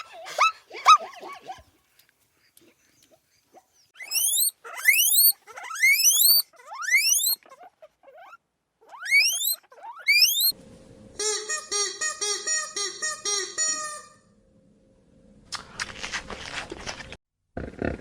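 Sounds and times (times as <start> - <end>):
small animal squealing: 4.0 - 10.5.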